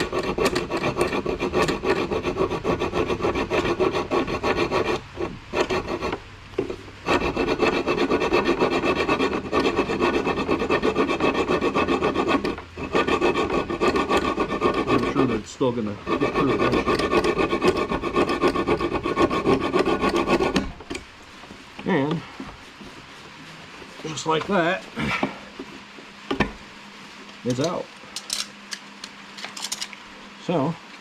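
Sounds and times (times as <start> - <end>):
hacksaw sawing through metal: 0.0 - 20.8.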